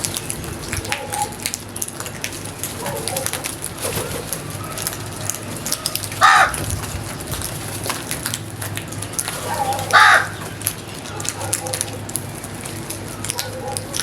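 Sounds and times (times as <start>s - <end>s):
crow cawing: 6.2s - 6.7s, 9.6s - 10.6s.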